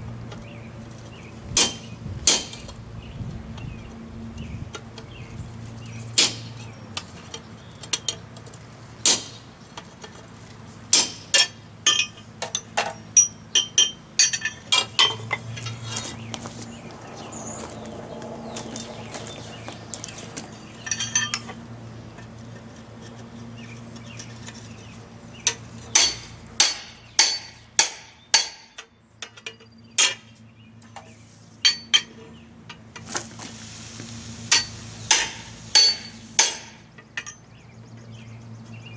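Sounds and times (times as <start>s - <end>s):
hammer striking steel on anvil: 1.6s - 2.7s, 6.2s - 6.6s, 9.0s - 9.4s, 10.9s - 12.2s, 25.9s - 29.4s, 31.6s - 32.3s, 34.5s - 37.4s.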